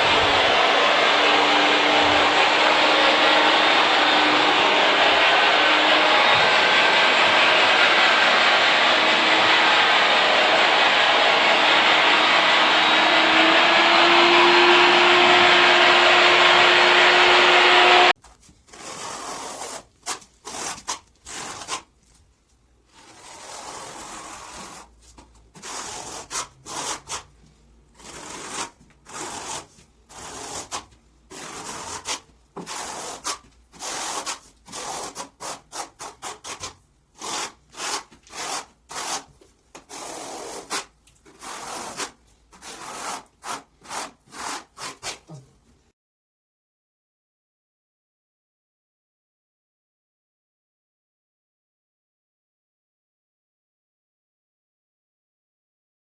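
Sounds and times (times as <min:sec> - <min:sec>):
power tool whining: 0:00.0 - 0:18.1.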